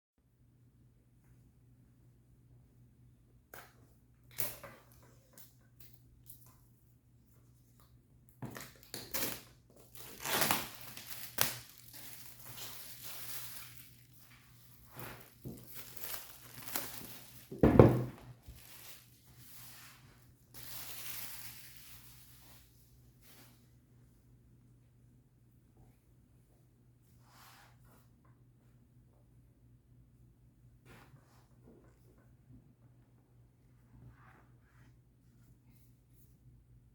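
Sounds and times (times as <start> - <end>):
paper and cardboard crinkling: 8.5 - 22.7.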